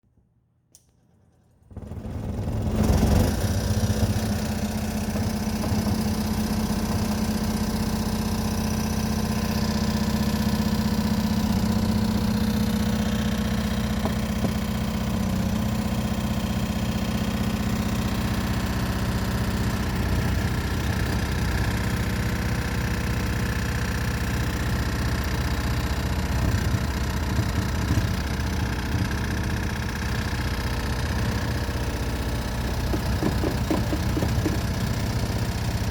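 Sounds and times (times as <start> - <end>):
machine motor humming: 31.2 - 35.5.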